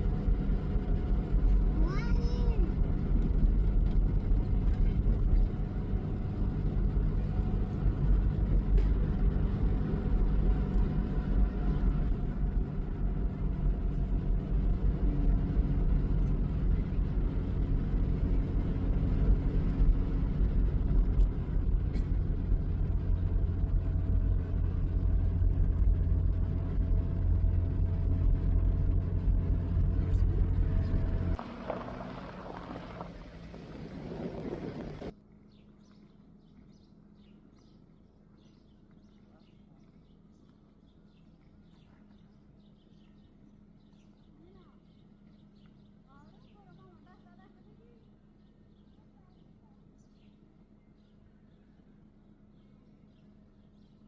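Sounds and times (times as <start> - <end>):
vehicle engine rumbling: 0.0 - 35.2.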